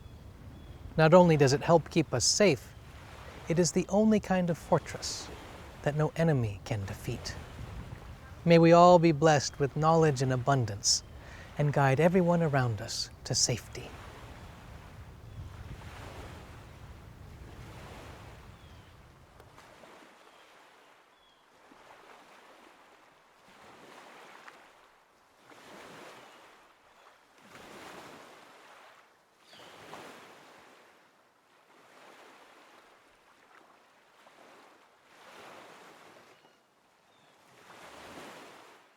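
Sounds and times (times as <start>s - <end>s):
faint waves washing on shore: 0.0s - 20.8s, 29.7s - 36.4s, 37.4s - 38.9s.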